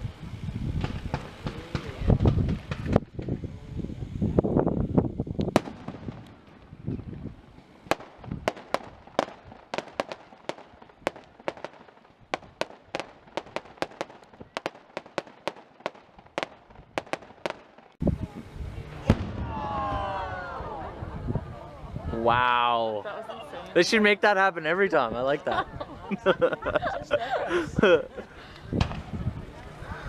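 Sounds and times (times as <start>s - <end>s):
fireworks crackling pops: 0.0s - 3.5s, 4.3s - 19.9s, 28.5s - 29.8s
fireworks booming: 0.7s - 3.4s, 4.4s - 21.5s, 28.7s - 29.5s.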